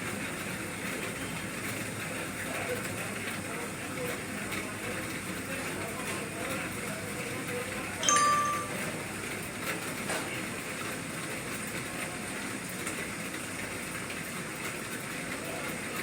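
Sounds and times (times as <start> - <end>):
short electronic beep: 8.0 - 8.9.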